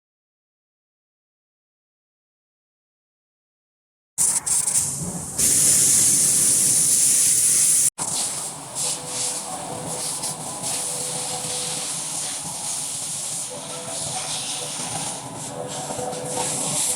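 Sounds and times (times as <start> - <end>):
loud spraying hiss: 4.2 - 14.8.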